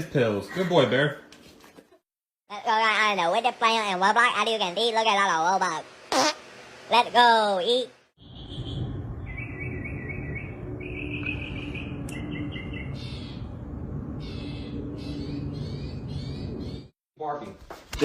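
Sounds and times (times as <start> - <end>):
bird chirping: 8.2 - 16.9
low background rumble: 8.2 - 16.9.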